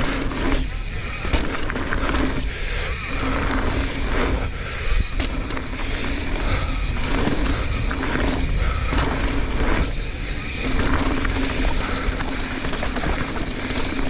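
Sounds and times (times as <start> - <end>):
bike knocks and rattles: 0.0 - 14.0
tyres rolling on dirt: 0.0 - 14.0
wind buffeting microphone: 0.3 - 14.0.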